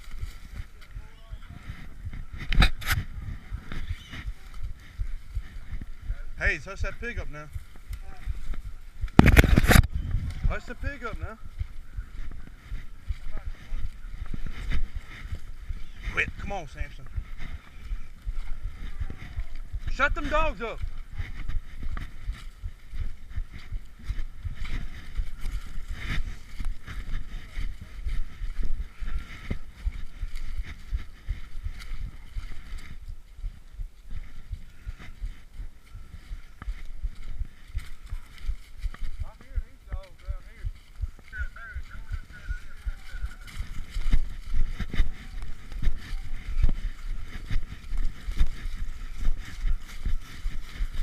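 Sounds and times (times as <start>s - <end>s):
footsteps walking: 0.0s - 51.0s
wind rumbling on microphone: 0.0s - 51.0s
camera handling noise: 2.4s - 3.1s, 9.1s - 10.0s.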